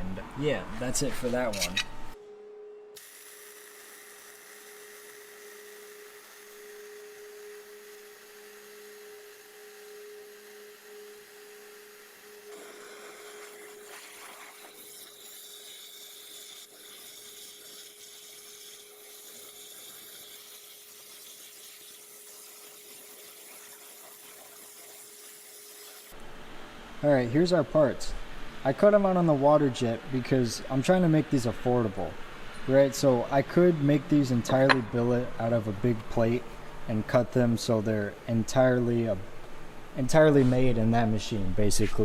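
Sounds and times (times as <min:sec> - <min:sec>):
steady machine hum: 0:00.0 - 0:13.9, 0:26.1 - 0:42.0
waterjet cutter hissing: 0:03.0 - 0:26.2.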